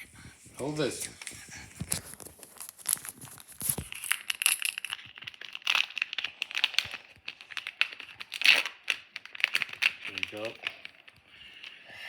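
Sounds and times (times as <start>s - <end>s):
foil wrapper tearing and crinkling: 1.8s - 11.2s.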